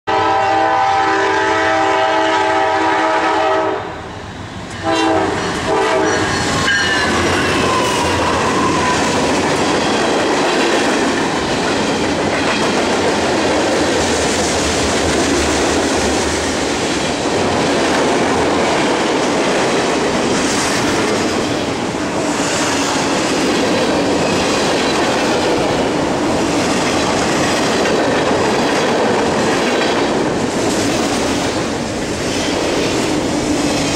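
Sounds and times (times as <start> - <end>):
locomotive air horn: 0.1 - 4.0, 4.8 - 8.6
freight train rumbling past: 0.1 - 33.9.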